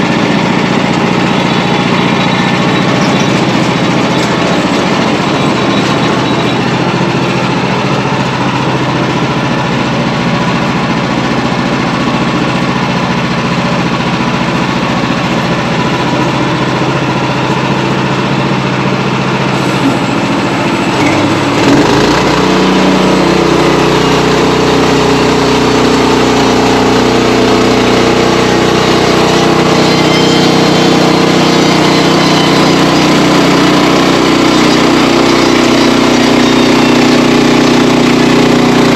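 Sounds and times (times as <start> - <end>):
sawmill gasoline engine running: 0.0 - 38.9.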